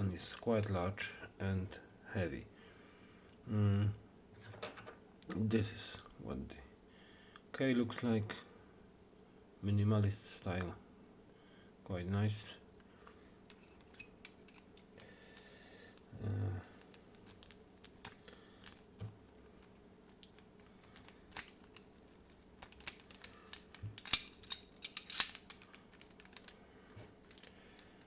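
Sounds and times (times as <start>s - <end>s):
metallic clicks of lock: 22.6s - 26.6s.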